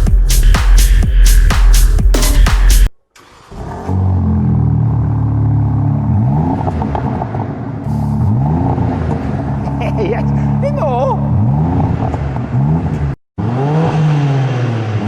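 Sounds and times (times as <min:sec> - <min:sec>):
car engine under load: 0:03.2 - 0:15.0.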